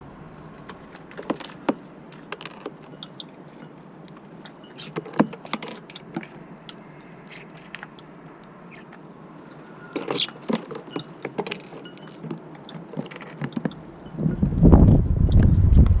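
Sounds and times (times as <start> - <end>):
birds pecking seed: 0.0 - 14.6
strong wind rushing: 14.2 - 16.0.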